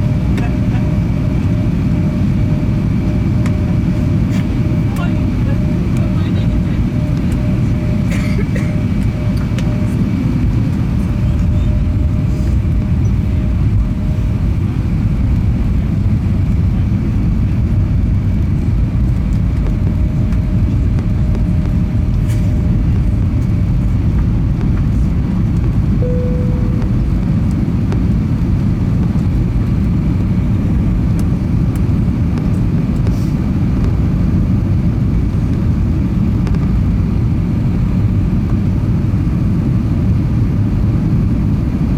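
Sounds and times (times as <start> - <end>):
airplane cabin engine rumble: 0.0 - 41.9
faint tone: 26.0 - 27.7.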